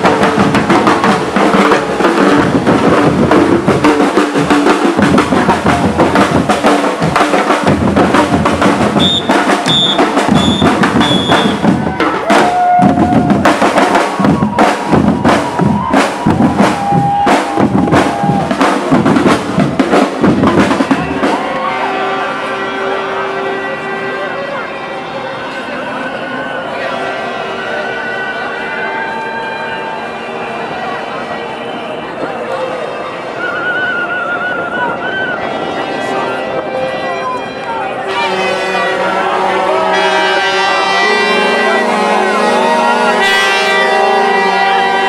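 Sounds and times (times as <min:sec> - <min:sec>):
drums beating fast rhythm: 0:00.0 - 0:21.7
high whistle blasts: 0:09.0 - 0:11.6.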